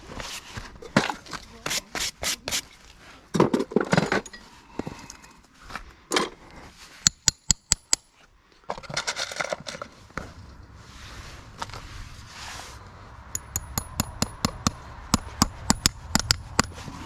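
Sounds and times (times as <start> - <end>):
rasp scraping a hoof: 0.2 - 2.9, 15.2 - 17.0.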